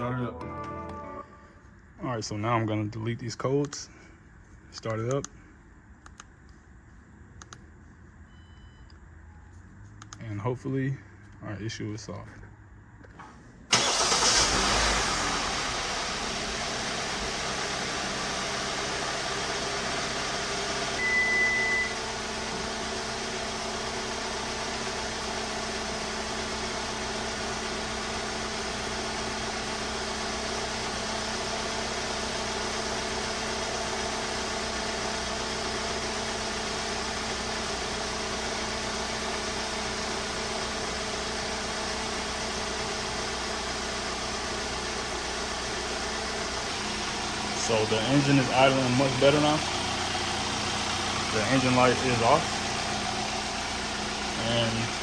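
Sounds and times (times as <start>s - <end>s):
car engine idling: 12.4s - 55.0s
short high beep: 21.0s - 22.0s.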